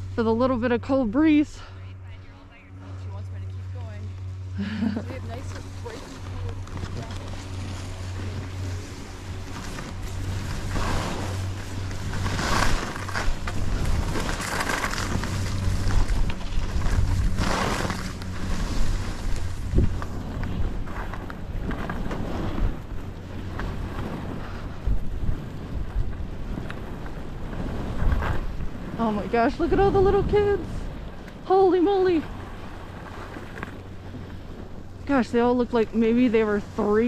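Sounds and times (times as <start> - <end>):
wind rushing over microphone: 0.0 - 37.0
skis swishing through powder: 6.8 - 22.7.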